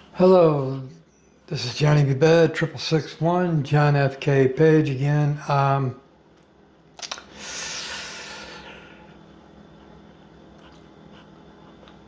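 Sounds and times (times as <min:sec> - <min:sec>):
man exhaling: 0:07.3 - 0:09.1.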